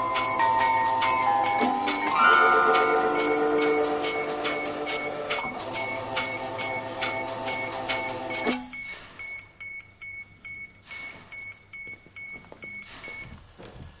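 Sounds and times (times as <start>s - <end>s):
steady hum: 0.0s - 8.7s.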